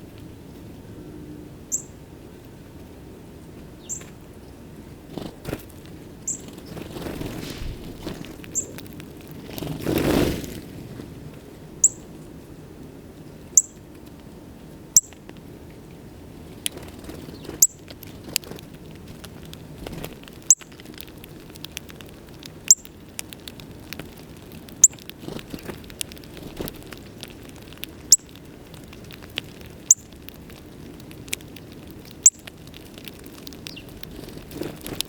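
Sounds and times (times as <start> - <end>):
rustle like wingbeats: 5.1 - 11.6
faint scattered ticks: 16.6 - 35.0.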